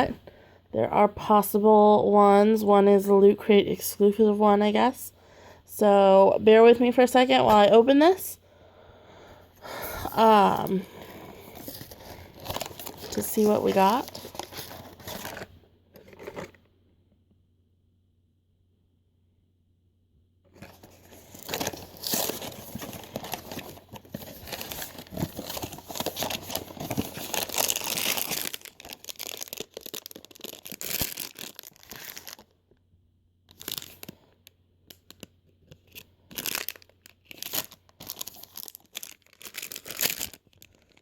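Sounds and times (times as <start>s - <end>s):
packaging tearing and rustling: 10.9s - 16.6s, 20.6s - 32.5s, 33.5s - 34.2s, 35.0s - 41.0s.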